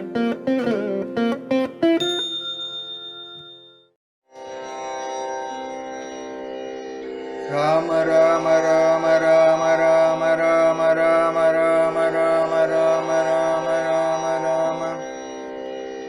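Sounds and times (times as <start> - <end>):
harmonium drone chord: 4.4 - 16.0.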